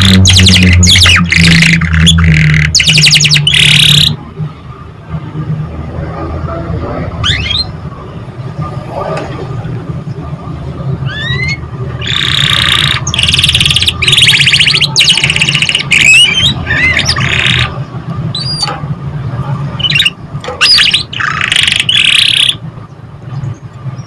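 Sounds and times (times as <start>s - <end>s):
canary singing trills: 0.0s - 4.2s, 7.2s - 7.8s, 11.0s - 18.7s, 19.8s - 24.0s
steady low hum: 0.0s - 20.6s.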